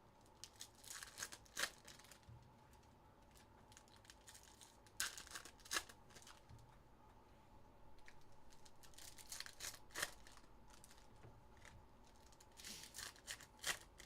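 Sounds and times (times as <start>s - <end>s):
wrappers crinkling and tearing: 0.3s - 6.4s, 8.0s - 14.0s
sharp wrapper snaps: 3.8s - 6.4s.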